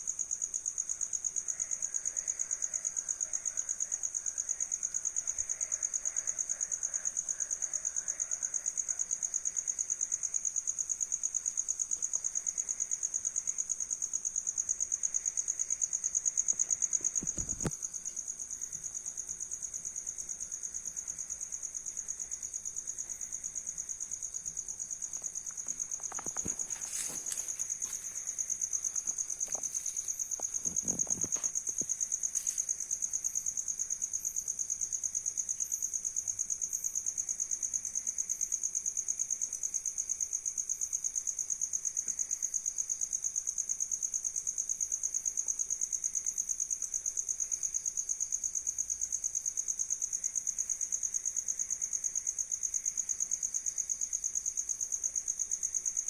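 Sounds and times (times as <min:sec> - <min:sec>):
knocks and rustles: 0:16.6 - 0:17.8, 0:25.5 - 0:32.7
insect trilling: 0:25.1 - 0:33.6.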